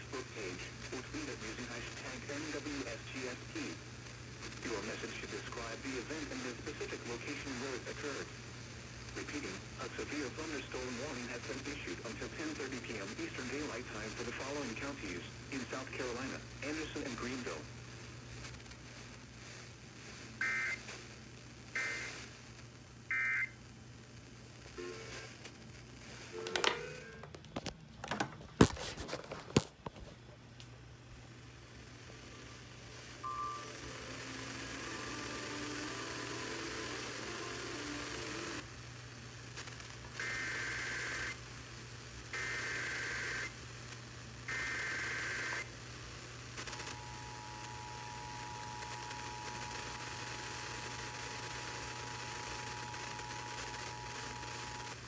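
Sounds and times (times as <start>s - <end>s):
radio hiss and low hum: 0.0s - 55.0s
clicks and crackles: 18.4s - 18.9s, 26.4s - 30.7s.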